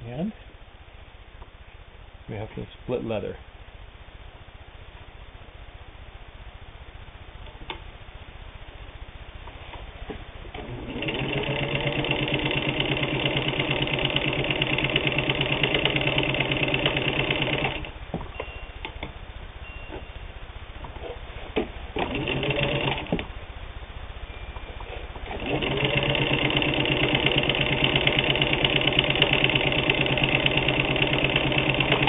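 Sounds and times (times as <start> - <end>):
sewing machine stitching: 10.6 - 17.9, 22.0 - 23.2, 25.2 - 32.0.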